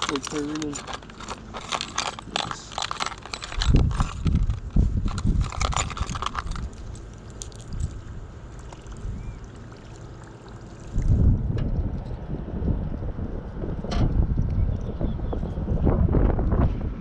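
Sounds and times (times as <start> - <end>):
plastic lures clattering: 0.0 - 8.0.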